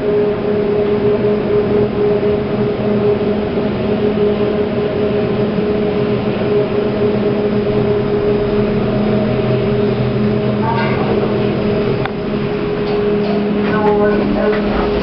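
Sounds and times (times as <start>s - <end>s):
lift machine hum with held tones: 0.0s - 15.0s.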